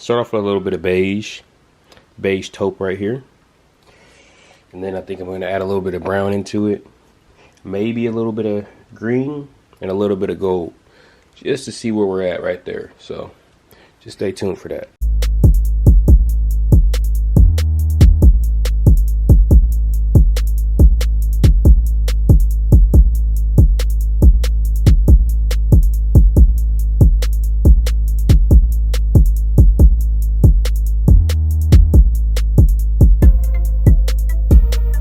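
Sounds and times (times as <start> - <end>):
deep bass line: 15.0 - 35.0
drum machine hits: 15.0 - 35.0.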